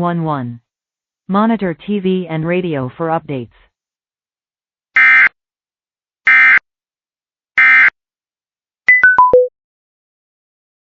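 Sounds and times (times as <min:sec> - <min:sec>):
electronic beeps stepping down: 0:08.9 - 0:09.5.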